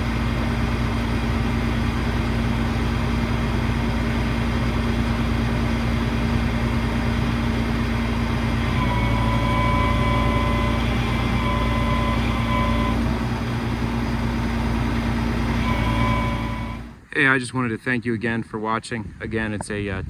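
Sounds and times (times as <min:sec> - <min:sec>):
diesel engine idling: 0:00.0 - 0:17.4
steady high whine: 0:08.0 - 0:17.1.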